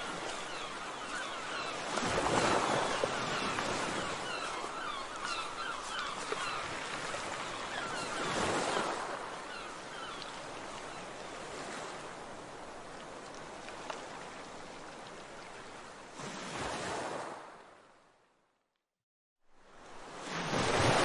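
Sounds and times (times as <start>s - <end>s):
ocean waves breaking: 0.0s - 17.7s, 19.6s - 21.0s
steady wash of water: 19.9s - 21.0s.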